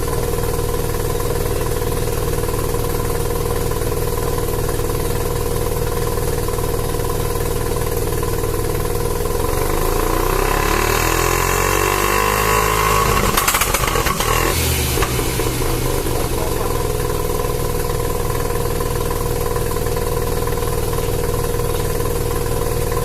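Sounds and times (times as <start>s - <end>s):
exhaust crackles: 9.2s - 23.0s
rotary engine revving and idling: 9.3s - 19.2s.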